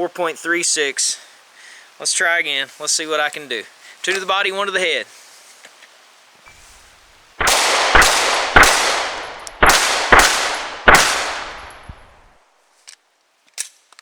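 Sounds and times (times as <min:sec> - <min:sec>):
pistol shots with long echo: 0:07.4 - 0:12.3.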